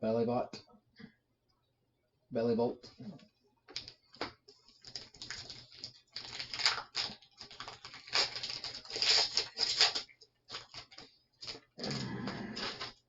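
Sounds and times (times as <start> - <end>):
plastic and foil wrappers crackling: 3.7 - 13.0.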